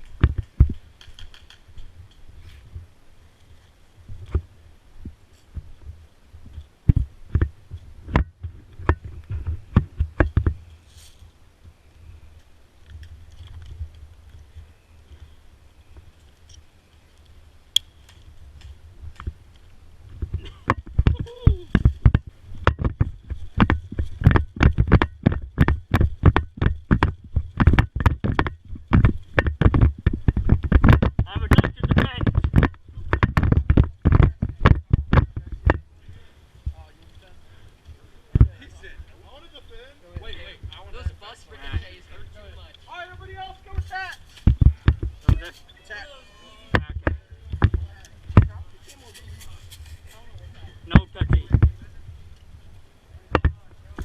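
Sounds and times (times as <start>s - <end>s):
faint steady high whine: 0.0s - 48.8s
dull thumps and knocks: 6.9s - 10.6s, 20.2s - 35.9s, 43.1s - 45.5s, 46.7s - 48.6s, 53.3s - 54.0s.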